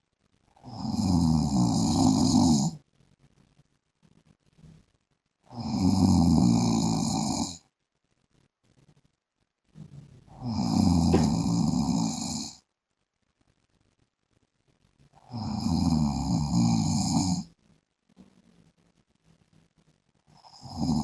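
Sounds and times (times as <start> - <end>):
man snoring: 0.6 - 2.8, 5.5 - 7.6, 10.3 - 12.6, 15.3 - 17.5, 20.4 - 21.0
quiet breathing: 9.8 - 12.6.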